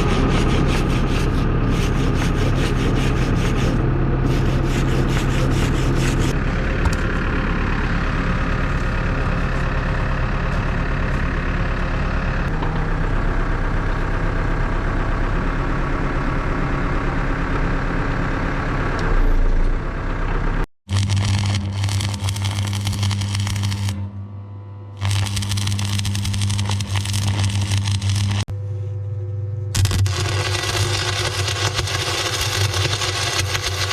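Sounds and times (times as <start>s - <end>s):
dense scraping: 0.0s - 6.4s
diesel engine running: 0.0s - 24.3s, 25.0s - 28.5s.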